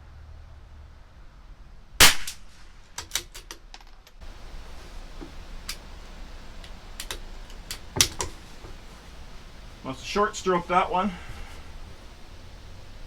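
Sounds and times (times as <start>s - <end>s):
rifle shot: 2.0s - 3.3s
metallic clicks of rifle bolt: 2.1s - 4.2s, 6.6s - 8.4s.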